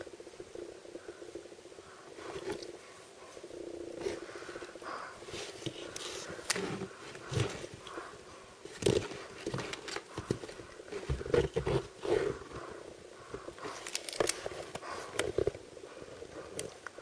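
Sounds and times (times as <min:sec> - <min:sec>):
packaging and toys handled: 0:08.6 - 0:12.7, 0:13.3 - 0:15.6.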